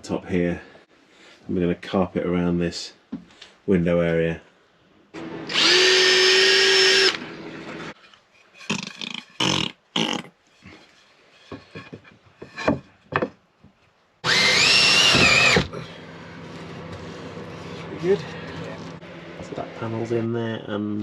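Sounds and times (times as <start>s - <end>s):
power drill driving screws: 5.4s - 7.2s, 14.2s - 15.7s.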